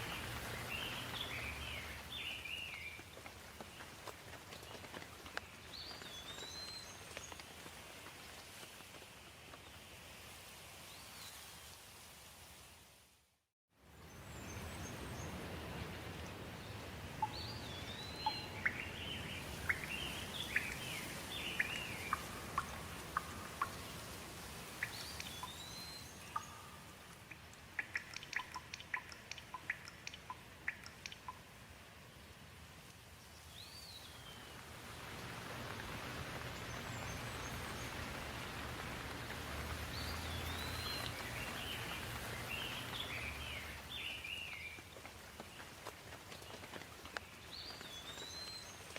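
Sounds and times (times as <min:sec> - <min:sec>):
steady rain: 0:00.0 - 0:48.9
birds singing whistles: 0:17.2 - 0:22.7, 0:24.8 - 0:26.8, 0:39.9 - 0:44.8
sharp ticks: 0:27.2 - 0:31.4.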